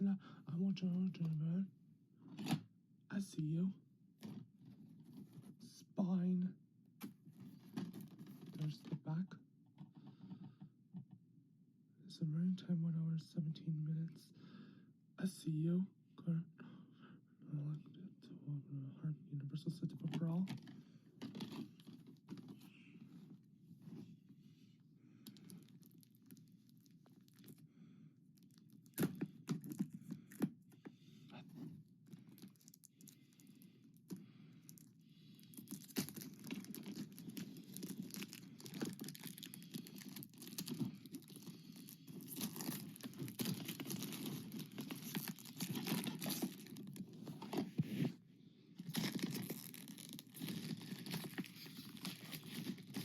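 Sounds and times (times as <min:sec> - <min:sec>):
plastic wrapping crinkling: 0:34.7 - 0:48.1, 0:48.8 - 0:53.0.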